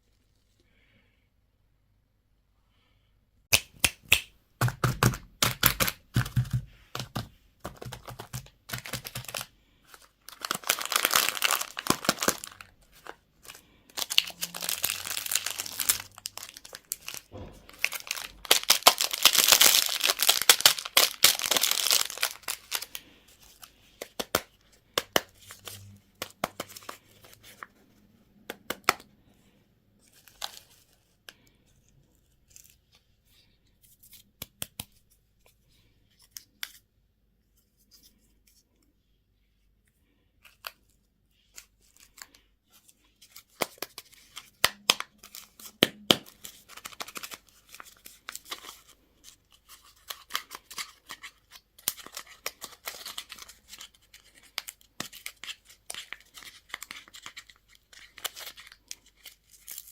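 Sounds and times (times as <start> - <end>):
packaging tearing and crinkling: 7.8 - 23.0.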